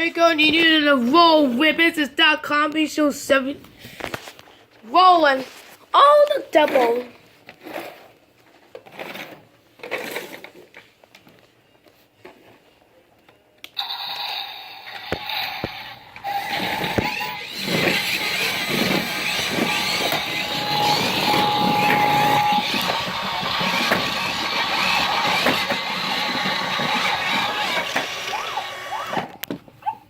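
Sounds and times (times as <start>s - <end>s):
toy car electronic siren effects: 13.8s - 29.3s.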